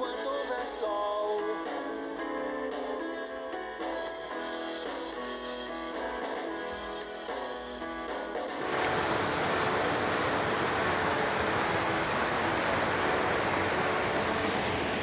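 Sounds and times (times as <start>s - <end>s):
music: 0.0s - 15.0s
waterfall rushing: 8.6s - 15.0s.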